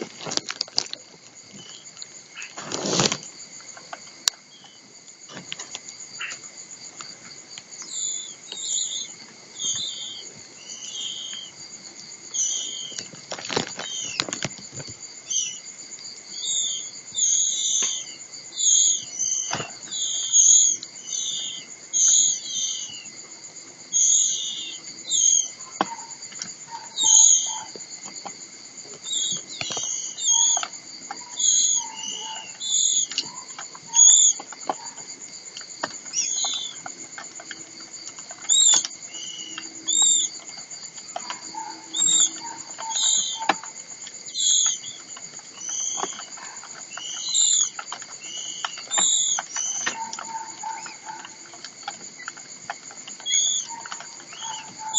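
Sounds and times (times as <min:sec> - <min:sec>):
high-pitched insect-like tones: 0:07.7 - 0:15.7, 0:16.3 - 0:23.1, 0:23.9 - 0:28.3, 0:29.0 - 0:54.9.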